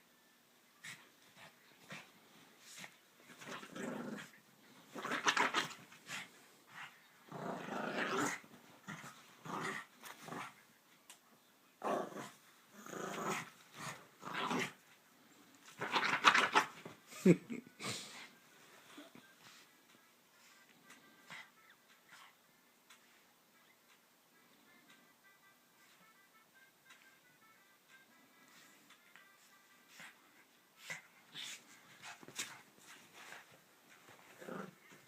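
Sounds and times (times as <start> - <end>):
dog growling: 3.5 - 4.4, 7.3 - 10.5, 11.8 - 14.8, 34.3 - 34.8.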